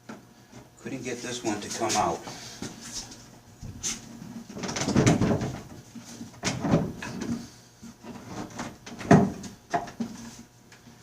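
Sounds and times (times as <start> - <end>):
wooden knocks and clunks: 4.6 - 5.7, 8.5 - 10.1.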